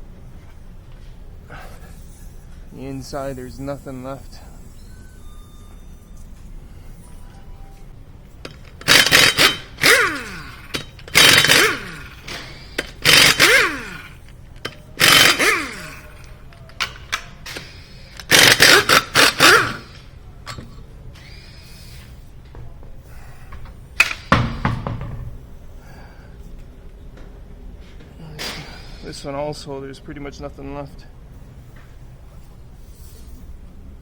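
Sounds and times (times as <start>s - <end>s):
power tool motor whine: 8.8s - 14.2s, 15.0s - 16.3s, 18.3s - 20.0s.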